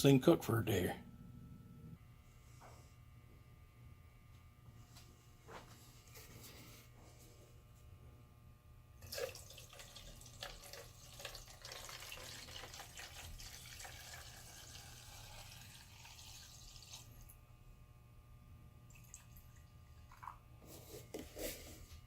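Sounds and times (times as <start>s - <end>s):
liquid pouring into a can: 9.0s - 17.4s, 18.9s - 20.4s.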